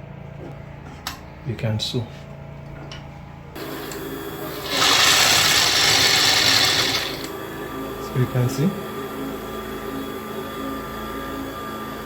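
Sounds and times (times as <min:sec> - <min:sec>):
sewing machine running: 0:03.6 - 0:07.3.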